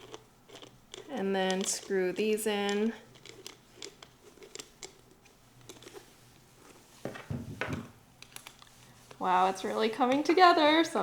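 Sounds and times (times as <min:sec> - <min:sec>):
hex key clicking and scraping: 0:02.7 - 0:06.0.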